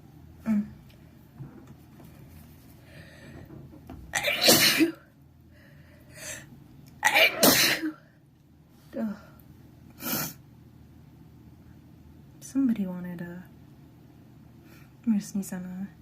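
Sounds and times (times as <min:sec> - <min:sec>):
person sneezing: 0:04.2 - 0:05.0, 0:07.0 - 0:08.0.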